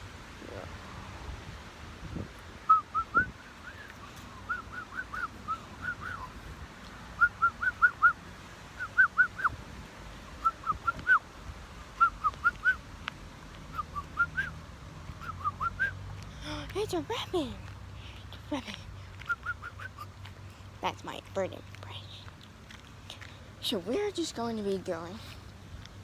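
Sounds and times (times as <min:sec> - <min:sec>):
person whistling bird chirps: 0:02.7 - 0:06.3, 0:19.3 - 0:20.1.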